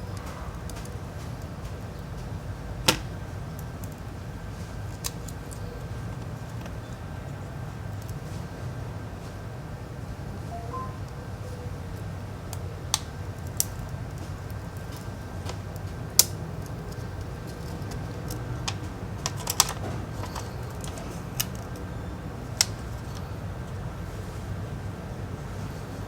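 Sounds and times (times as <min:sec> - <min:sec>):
small tools clicking and tapping: 0:12.5 - 0:21.9.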